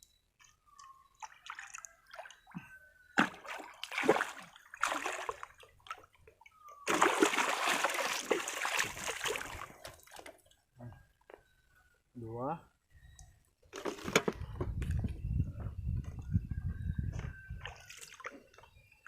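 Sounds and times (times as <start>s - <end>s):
water splashing and sloshing: 0.4s - 10.7s, 17.6s - 18.7s.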